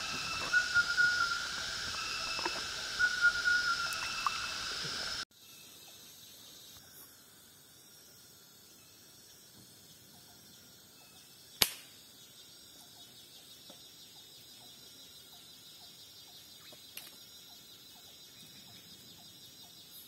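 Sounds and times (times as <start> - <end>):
high whistling hissing call: 0.0 - 7.2
faint insects chirping: 0.0 - 20.0.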